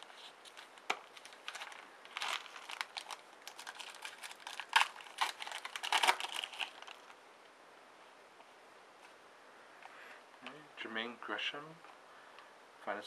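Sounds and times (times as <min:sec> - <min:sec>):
card pack wrapper crinkling: 0:00.0 - 0:07.2.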